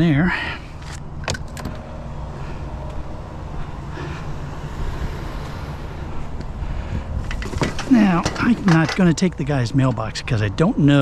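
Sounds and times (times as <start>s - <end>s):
vehicle engine idling: 0.0s - 11.0s
scrap metal knocks: 7.2s - 10.0s.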